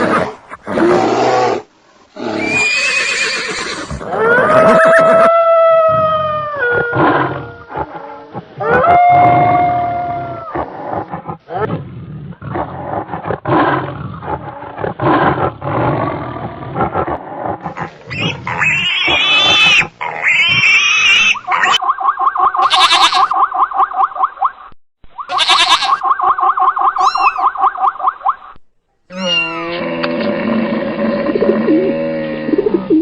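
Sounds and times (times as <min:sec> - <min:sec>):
animal calls rising and falling: 0:02.3 - 0:07.9, 0:18.1 - 0:24.5, 0:25.1 - 0:30.2
animal grunts and roars: 0:03.8 - 0:21.8, 0:29.1 - 0:33.0
long pulsing animal calls: 0:25.3 - 0:28.1.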